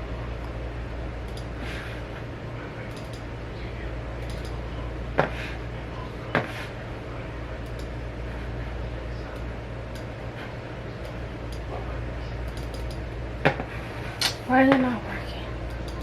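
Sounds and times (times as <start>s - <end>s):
steady low hum: 0.0s - 16.0s
sharp clicks: 1.3s - 1.5s, 2.9s - 3.3s, 4.2s - 4.6s, 12.4s - 13.0s.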